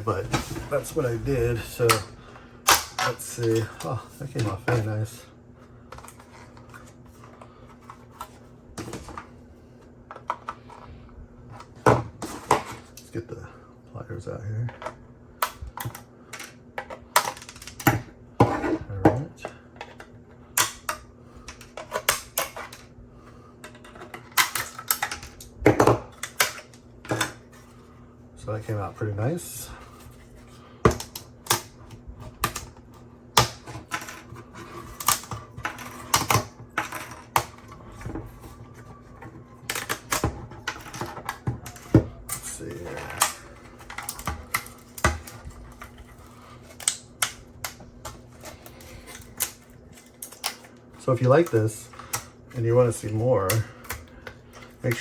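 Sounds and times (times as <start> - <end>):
plastic snapping and cracking: 2.7 - 4.5, 20.6 - 22.8, 34.9 - 42.5, 43.1 - 52.3.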